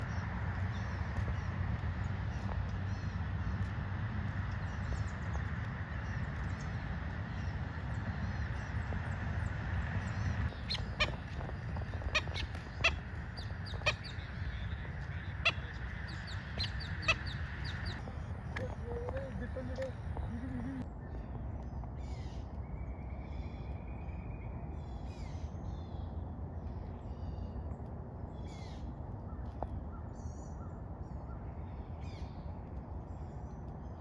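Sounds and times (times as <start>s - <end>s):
birds chirping: 0.0s - 26.2s
steady low rumble: 0.0s - 34.0s
sharp loud bird calls: 10.1s - 18.1s.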